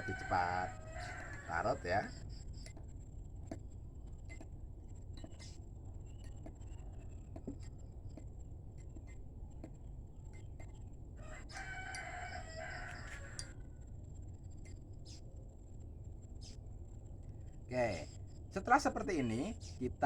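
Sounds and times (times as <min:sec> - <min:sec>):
rooster crowing: 0:00.0 - 0:02.2, 0:11.2 - 0:13.9.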